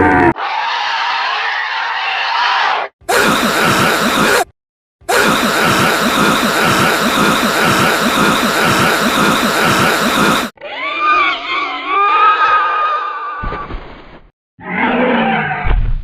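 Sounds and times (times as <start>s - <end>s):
harsh distorted pulsing drone: 3.1s - 4.5s, 5.1s - 10.5s.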